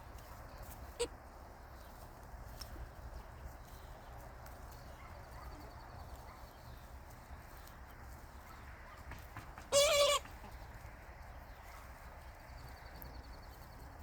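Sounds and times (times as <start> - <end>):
chickens clucking: 8.4 - 10.9
chicken calling loudly: 9.6 - 10.5.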